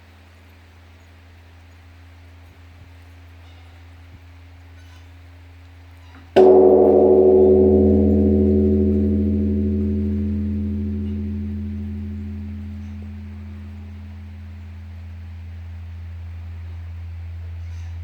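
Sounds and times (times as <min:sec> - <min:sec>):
large temple bell struck: 0:06.4 - 0:16.4
deep ringing hum: 0:06.4 - 0:18.0.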